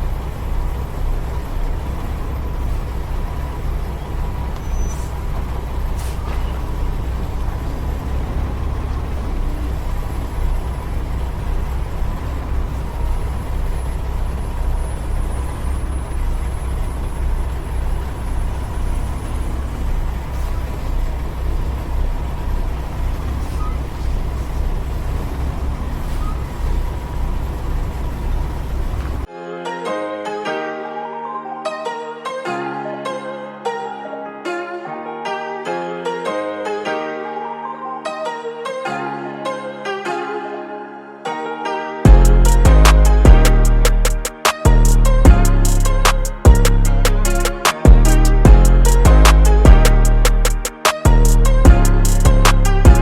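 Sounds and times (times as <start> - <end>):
diesel truck engine idling: 0.0 - 29.3, 42.1 - 53.0.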